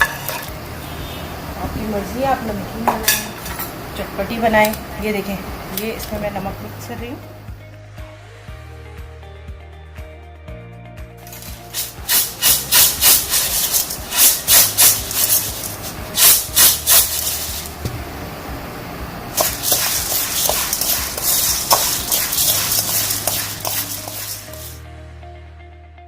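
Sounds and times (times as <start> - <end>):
crisp lentils rattling when tossed: 11.3 - 17.7, 19.4 - 24.8.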